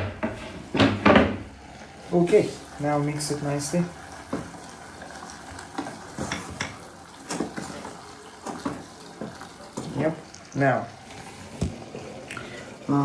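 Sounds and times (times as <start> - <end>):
faint sizzle: 1.5 - 13.0.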